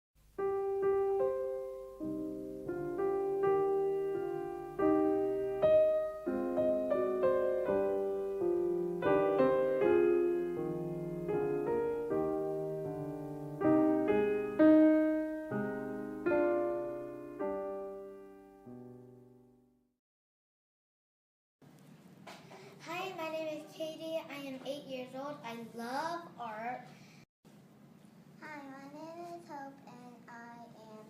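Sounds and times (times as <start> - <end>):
gentle solo piano music: 0.4 - 19.4.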